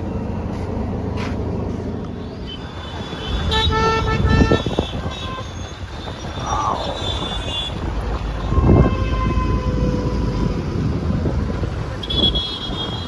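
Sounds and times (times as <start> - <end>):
low rumble of engines: 0.0 - 13.0
street noise: 0.0 - 13.0
vehicle horn toots: 2.4 - 7.8, 8.4 - 10.5, 12.0 - 13.0.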